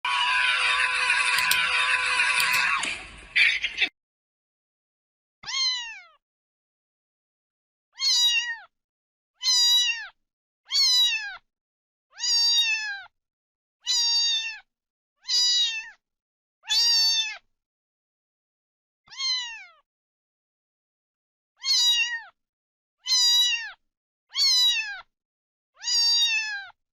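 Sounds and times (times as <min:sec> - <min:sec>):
kitten meowing: 0:05.4 - 0:06.2, 0:08.0 - 0:08.7, 0:09.4 - 0:11.4, 0:12.1 - 0:13.1, 0:13.9 - 0:14.6, 0:15.2 - 0:16.0, 0:16.7 - 0:17.4, 0:19.1 - 0:19.8, 0:21.6 - 0:22.3, 0:23.0 - 0:25.1, 0:25.8 - 0:26.8.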